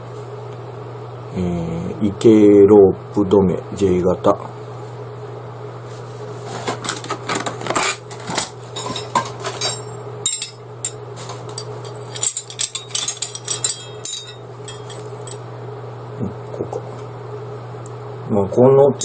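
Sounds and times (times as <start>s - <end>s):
steel pegs clinking: 8.4s - 15.5s.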